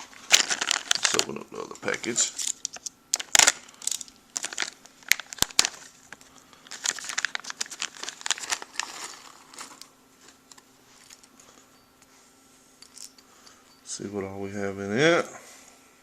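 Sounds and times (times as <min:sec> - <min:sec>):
plastic package crinkling: 0:00.0 - 0:11.3.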